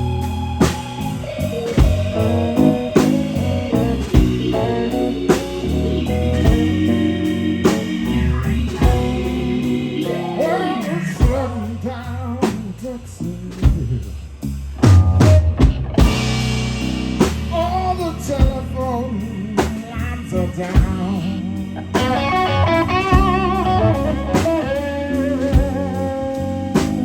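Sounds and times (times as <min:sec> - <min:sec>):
bending guitar lead line: 0:00.0 - 0:11.7, 0:20.2 - 0:27.0
blues band playing: 0:00.0 - 0:27.0.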